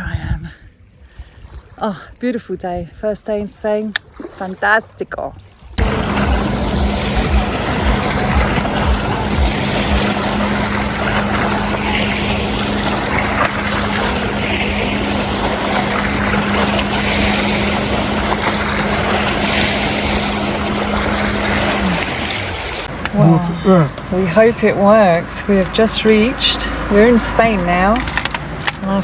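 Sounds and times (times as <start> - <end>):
wind buffeting microphone: 0.0 - 1.8, 5.4 - 22.9
road and wind noise: 5.2 - 29.0
vehicle engine drone: 5.8 - 29.0.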